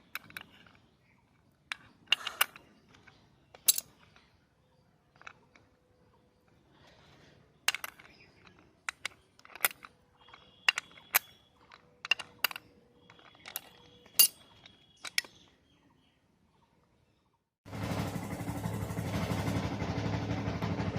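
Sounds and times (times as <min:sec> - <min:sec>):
sharp clicks and knocks: 0:00.0 - 0:04.4, 0:07.6 - 0:15.6.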